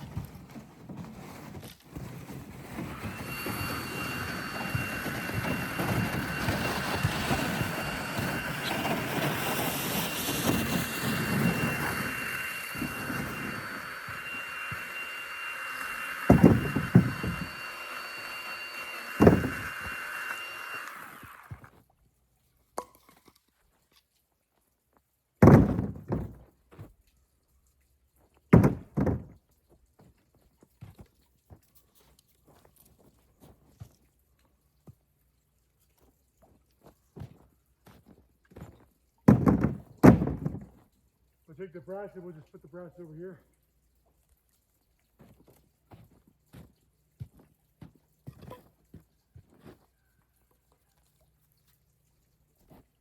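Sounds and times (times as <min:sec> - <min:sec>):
motor running: 0:02.6 - 0:21.7.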